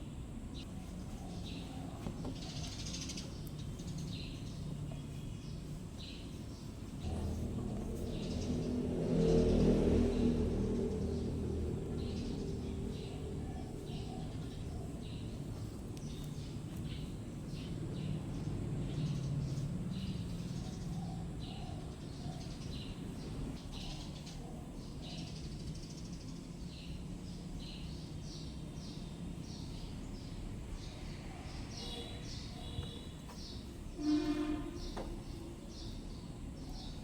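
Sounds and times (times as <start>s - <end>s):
small birds chirping: 0.0s - 37.0s
steady low hum: 0.0s - 37.0s.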